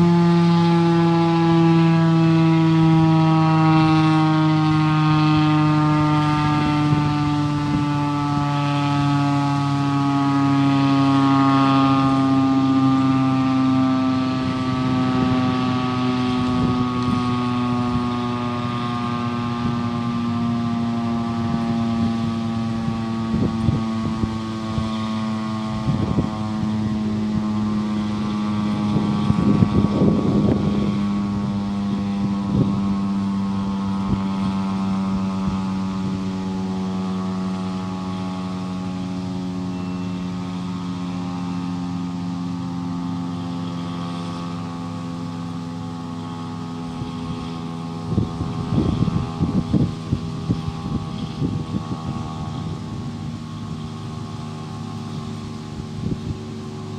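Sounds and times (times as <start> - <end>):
siren winding down: 0.0 - 56.9
gusts of rumbling noise: 25.6 - 37.5, 48.0 - 56.9.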